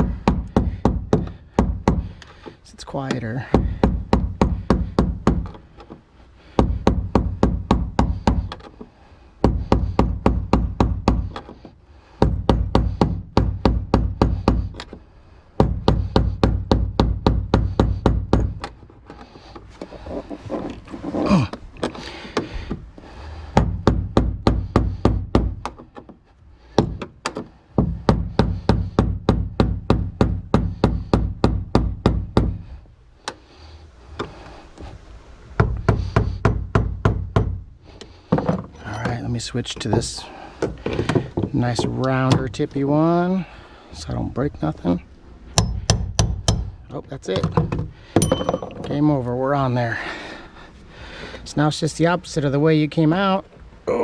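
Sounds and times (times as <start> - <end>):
screwdriver tapping on metal ring: 45.6 - 46.7, 48.2 - 48.9.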